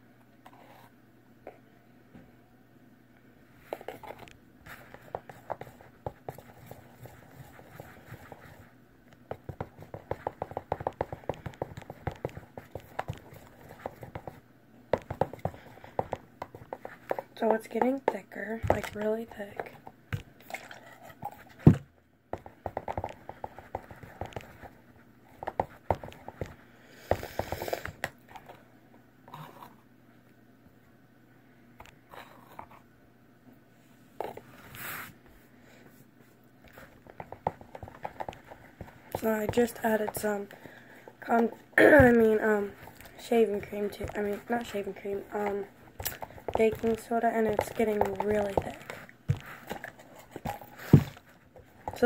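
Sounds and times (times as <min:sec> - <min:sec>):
utensil stirring slime in bowl: 0:03.6 - 0:14.4, 0:15.0 - 0:21.6, 0:22.4 - 0:26.6, 0:36.7 - 0:52.0.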